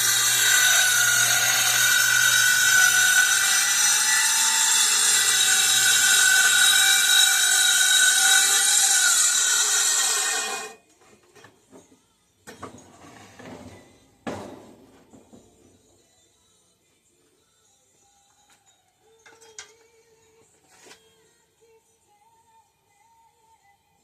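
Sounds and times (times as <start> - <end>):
power tool whining on steel: 0.0 - 10.8.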